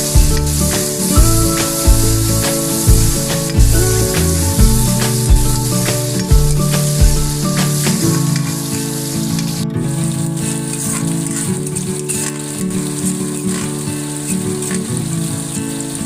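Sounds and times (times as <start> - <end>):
background music with beat: 0.0 - 9.6
food sizzling in a hot pan: 0.0 - 16.0.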